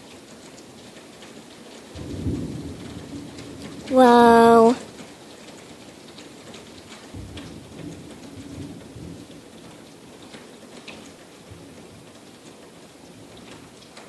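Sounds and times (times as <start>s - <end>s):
heavy rain pouring: 1.2s - 14.0s.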